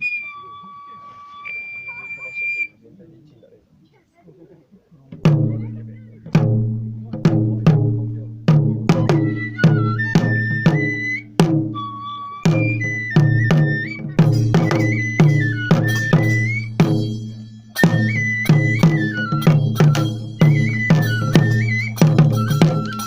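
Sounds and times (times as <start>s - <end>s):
high flute melody: 0.0s - 2.7s, 8.8s - 23.0s
deep drum beating: 5.2s - 23.0s.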